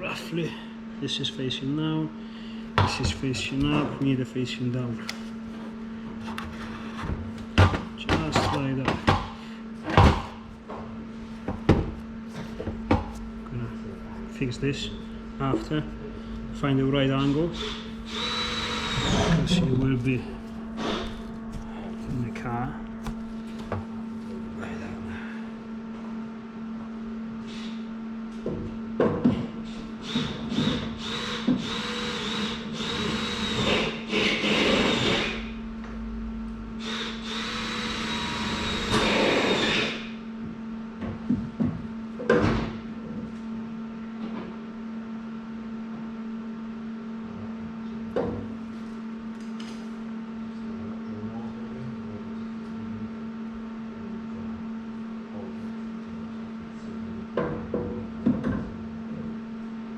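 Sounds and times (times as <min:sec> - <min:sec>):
low hum: 0:11.1 - 0:25.7, 0:35.4 - 0:38.0
power tool whining: 0:17.0 - 0:23.4, 0:30.0 - 0:35.5, 0:36.8 - 0:40.1.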